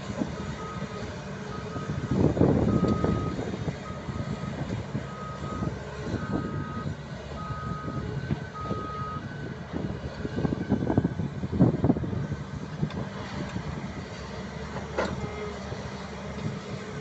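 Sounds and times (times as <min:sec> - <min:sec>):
heavy diesel machinery rumble: 0:00.0 - 0:17.0
reversing alarm beeping: 0:01.5 - 0:09.3.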